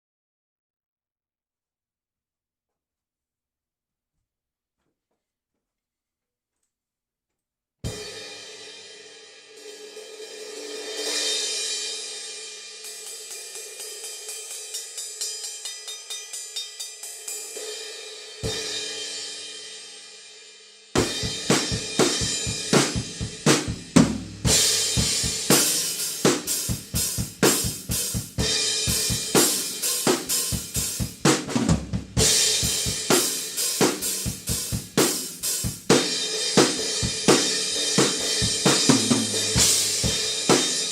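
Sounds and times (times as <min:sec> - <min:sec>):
drum kit beat: 0:21.0 - 0:40.9.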